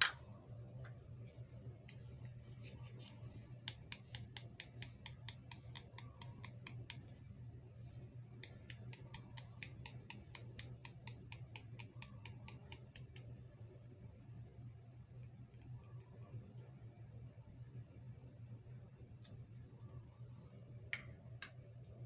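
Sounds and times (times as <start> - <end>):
steady low hum: 0.0 - 22.0
rapid small clicks: 3.0 - 7.1, 8.4 - 13.4, 15.1 - 16.4.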